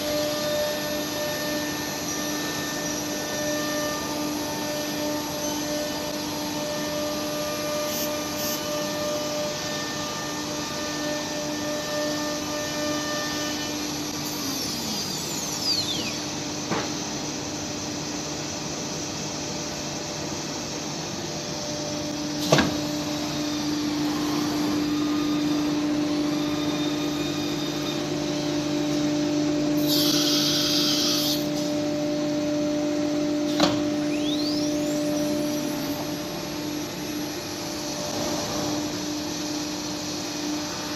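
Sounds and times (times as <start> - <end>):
machine hum: 0.0 - 40.9
spindle whine: 14.1 - 16.9.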